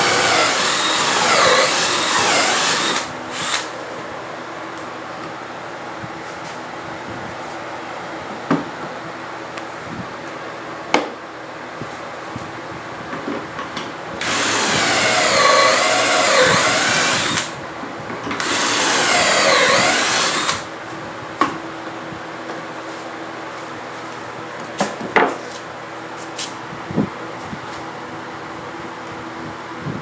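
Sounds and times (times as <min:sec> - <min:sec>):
power tool cutting wood: 0:00.0 - 0:03.7, 0:14.2 - 0:17.6, 0:18.4 - 0:20.7.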